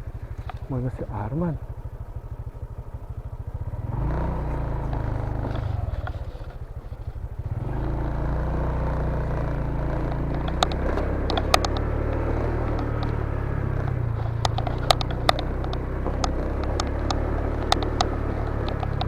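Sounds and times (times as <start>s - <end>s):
motorcycle engine revving: 0.0s - 19.0s
sharp clicks or knocks: 10.3s - 19.0s.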